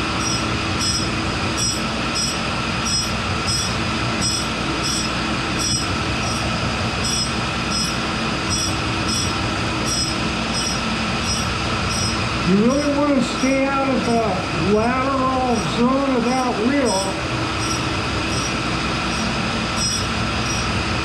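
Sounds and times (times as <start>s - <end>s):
grinding wheel on steel: 0.0s - 21.0s
machine hum: 0.0s - 21.0s.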